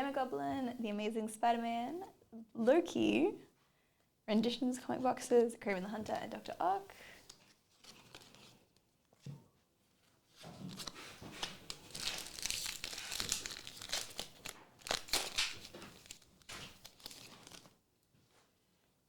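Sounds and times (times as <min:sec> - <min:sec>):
card pack wrapper tearing: 0:07.8 - 0:08.5, 0:10.7 - 0:17.7.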